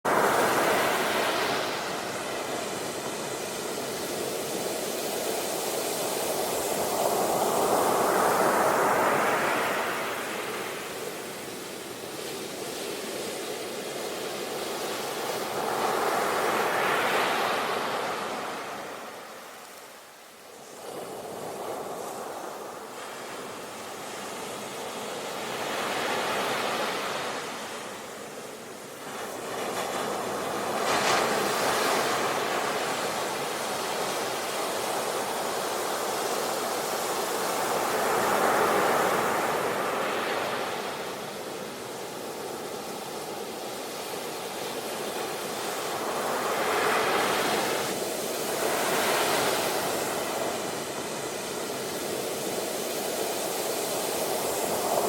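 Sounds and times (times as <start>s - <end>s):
ocean waves breaking on shore: 0.1s - 55.0s.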